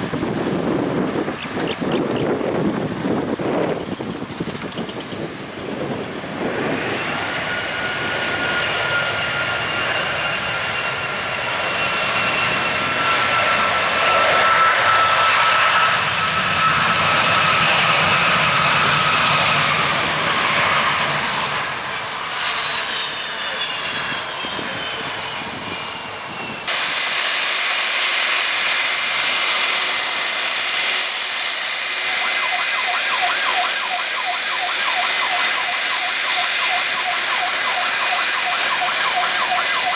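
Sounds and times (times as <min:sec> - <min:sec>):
airliner engines with high whine: 0:00.0 - 0:39.9.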